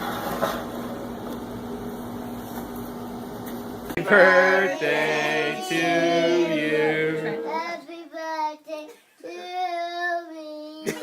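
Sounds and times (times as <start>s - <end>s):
room hum: 0.0s - 9.7s
child singing held notes: 4.0s - 11.0s.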